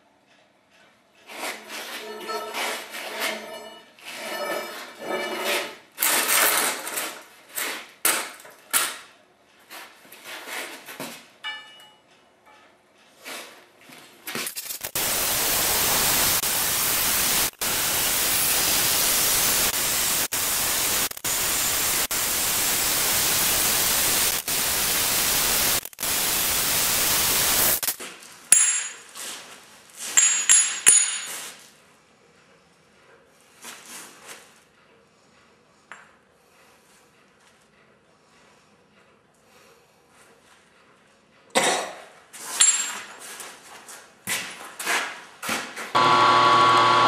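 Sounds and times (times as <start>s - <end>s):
metallic clinks ringing: 11.4s - 12.1s
loud steady hiss: 14.8s - 28.0s.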